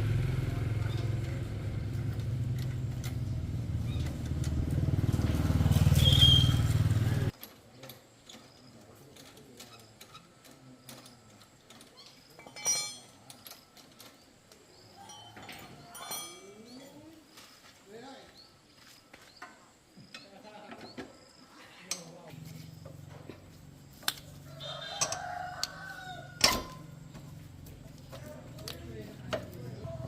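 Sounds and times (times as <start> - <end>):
motorcycle engine running: 0.0 - 7.3
brief high squeal: 6.0 - 6.6
sharp clink: 15.0 - 16.8.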